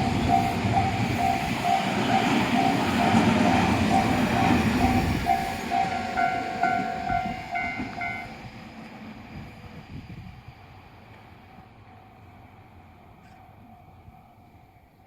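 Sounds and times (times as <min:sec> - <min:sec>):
level crossing warning bell: 0:00.0 - 0:08.4
train running past: 0:00.0 - 0:15.0.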